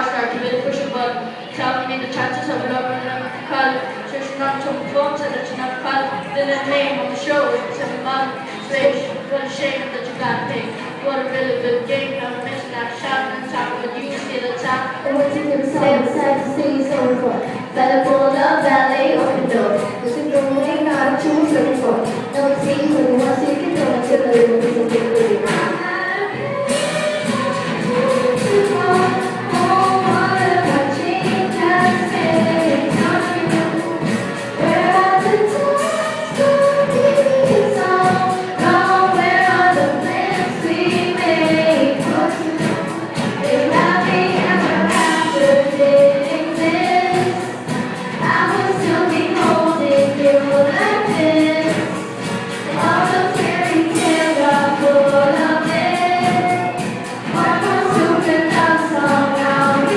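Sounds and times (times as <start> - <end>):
voices singing over a beat: 0.0 - 59.9.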